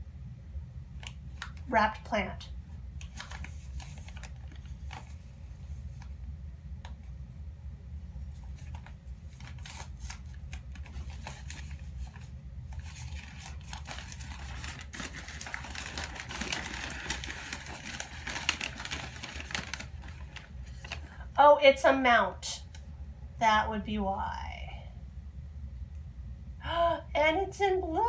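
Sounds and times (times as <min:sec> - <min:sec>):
wrapping crinkling and rustling: 0:03.0 - 0:06.2, 0:08.3 - 0:21.3.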